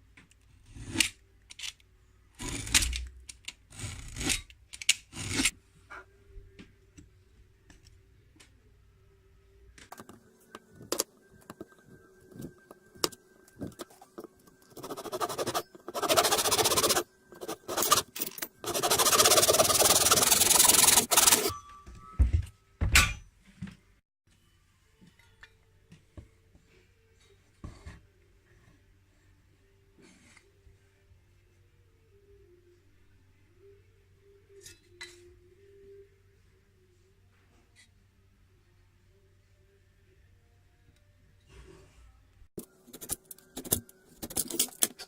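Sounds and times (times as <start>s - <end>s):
tools scraping wood: 13.6s - 21.5s.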